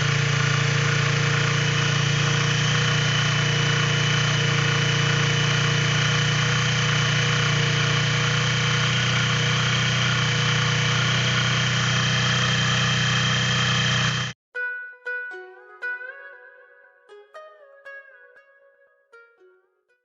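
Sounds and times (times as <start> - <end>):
motorcycle engine idling: 0.0 - 14.4
rapid mechanical knocking: 0.0 - 14.4.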